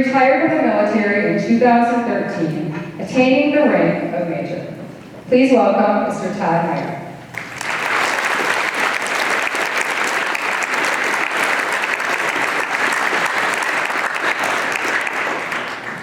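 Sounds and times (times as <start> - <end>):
audience applauding: 7.3 - 16.0.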